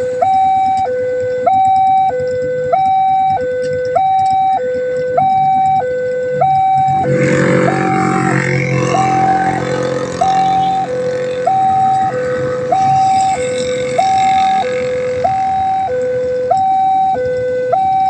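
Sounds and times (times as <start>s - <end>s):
two-tone warning siren: 0.0s - 18.0s
loud rumbling noise: 6.8s - 16.5s.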